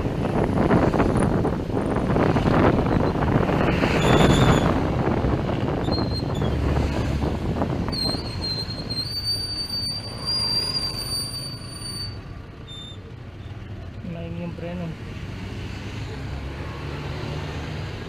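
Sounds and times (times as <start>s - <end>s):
high brake squeal: 4.0s - 4.8s, 5.8s - 6.6s, 7.9s - 13.6s.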